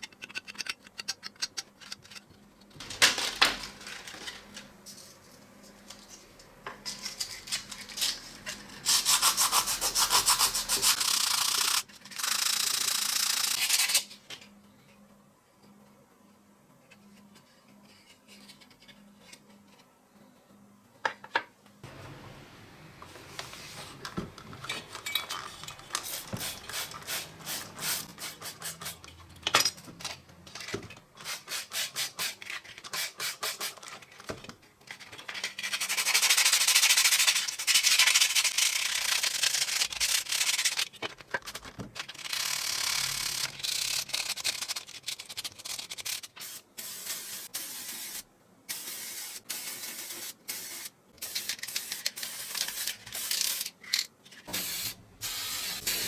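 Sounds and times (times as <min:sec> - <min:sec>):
hand sanding strokes: 0:08.9 - 0:11.8.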